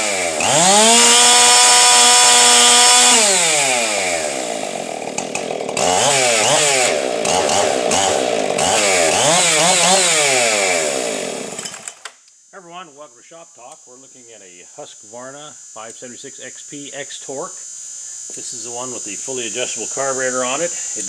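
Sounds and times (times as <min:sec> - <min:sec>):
chainsaw engine revving: 0:00.0 - 0:12.1, 0:18.6 - 0:21.0.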